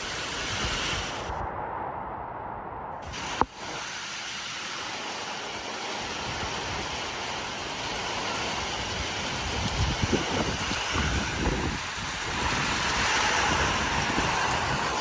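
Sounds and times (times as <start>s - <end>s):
wind buffeting microphone: 0.0s - 4.0s, 5.6s - 15.0s
storm wind rushing: 0.0s - 4.2s, 8.8s - 15.0s.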